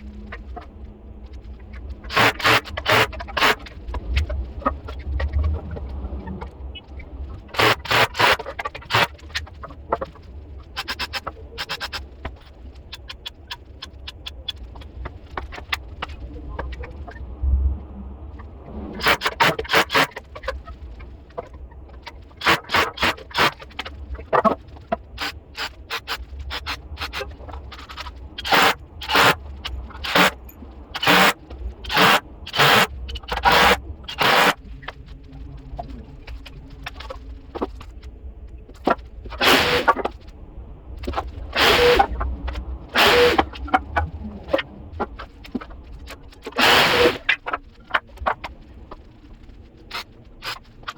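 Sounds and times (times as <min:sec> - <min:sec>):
hand tool scraping wood: 0:02.1 - 0:03.7, 0:07.5 - 0:09.2, 0:19.0 - 0:20.2, 0:22.4 - 0:23.7, 0:27.9 - 0:29.4, 0:30.0 - 0:30.4, 0:31.0 - 0:34.6, 0:42.9 - 0:43.5, 0:46.5 - 0:47.6.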